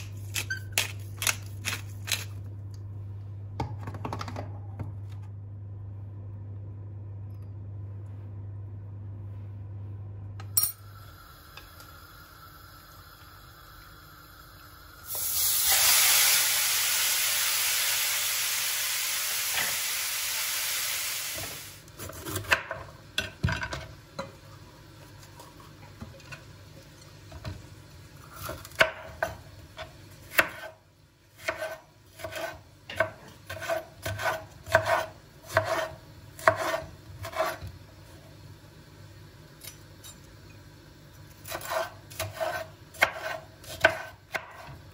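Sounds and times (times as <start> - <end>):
loud steady cooking hiss: 10.8 - 22.2.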